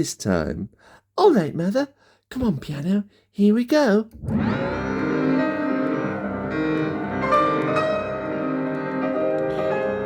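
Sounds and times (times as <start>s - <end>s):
piano music: 4.2s - 10.0s.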